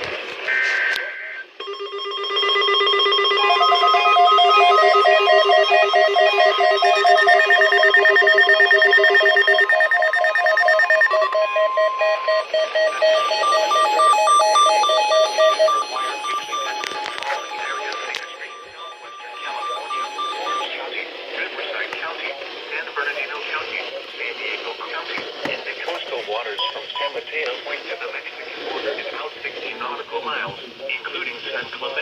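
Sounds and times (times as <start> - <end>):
steady alarm tone: 1.6 - 20.7
overlapping electronic alarm beeping: 1.6 - 20.9.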